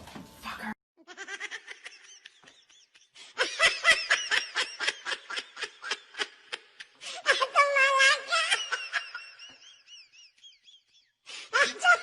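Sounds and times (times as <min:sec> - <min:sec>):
high-pitched laughter bursts: 0:01.0 - 0:10.5.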